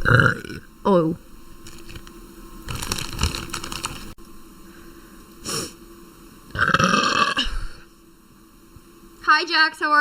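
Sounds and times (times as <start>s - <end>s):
woman burping: 6.5s - 7.7s.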